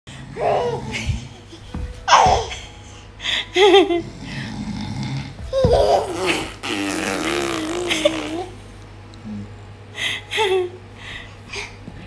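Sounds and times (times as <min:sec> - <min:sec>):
baby laughing: 0:00.4 - 0:02.7, 0:05.4 - 0:08.6
baby making mock snoring sounds: 0:06.2 - 0:08.5.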